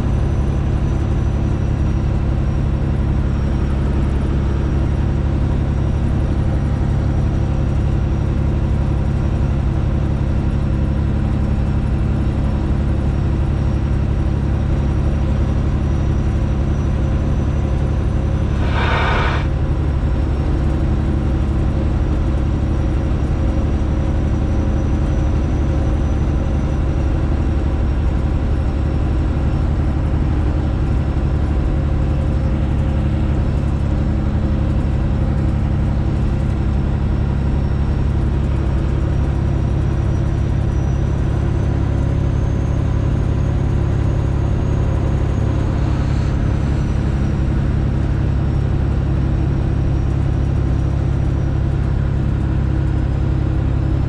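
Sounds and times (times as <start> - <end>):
truck diesel engine droning: 0.0 - 54.0
faint high whine: 16.2 - 19.9, 42.2 - 48.8.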